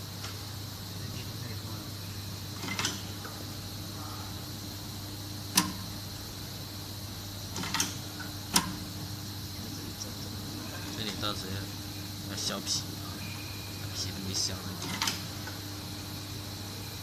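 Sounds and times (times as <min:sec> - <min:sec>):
mechanical clicks: 0:05.5 - 0:05.9.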